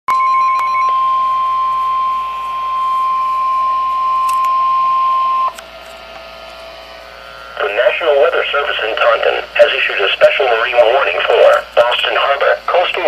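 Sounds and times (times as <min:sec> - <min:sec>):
steady warning alarm tone: 0:00.1 - 0:13.0
faint radio hiss: 0:07.6 - 0:13.0.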